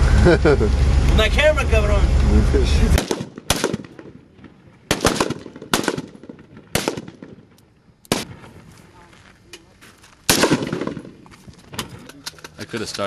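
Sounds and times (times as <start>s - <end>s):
gunshots with echo: 3.0s - 7.5s, 10.3s - 11.2s.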